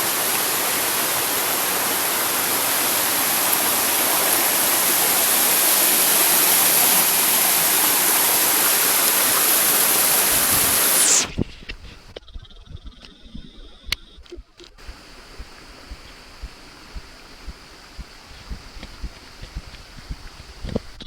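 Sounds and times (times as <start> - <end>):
waterfall rushing: 0.0 - 11.3.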